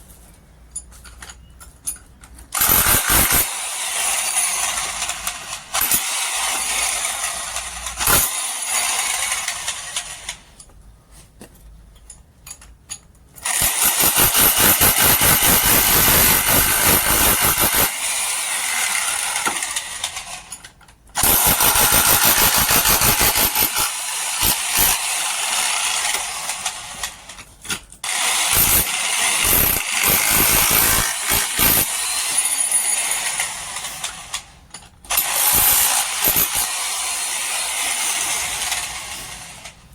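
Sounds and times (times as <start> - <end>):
electric demolition hammer hammering: 13.5 - 19.8, 21.2 - 26.5, 28.0 - 33.4.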